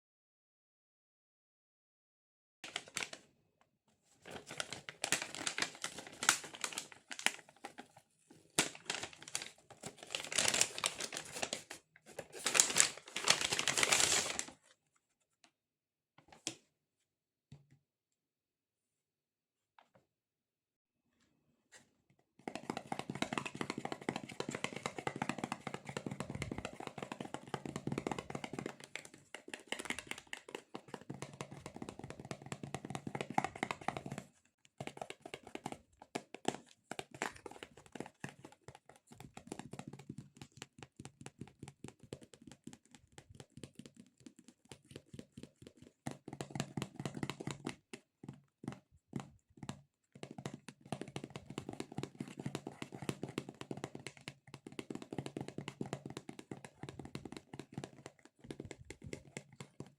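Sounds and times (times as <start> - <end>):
fingertips tapping squishy toys: 22.5 - 59.9.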